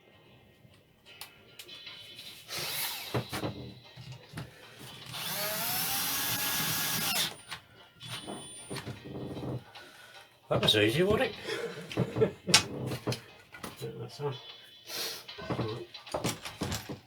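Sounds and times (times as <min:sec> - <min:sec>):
cordless drill motor spinning: 0:05.0 - 0:07.4.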